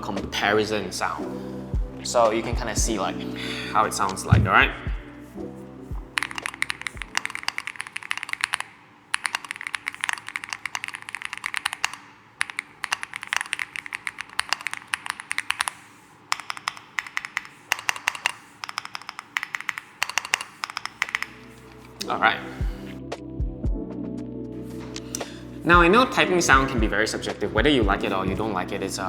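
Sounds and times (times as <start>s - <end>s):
mechanical keyboard typing: 5.9s - 22.0s.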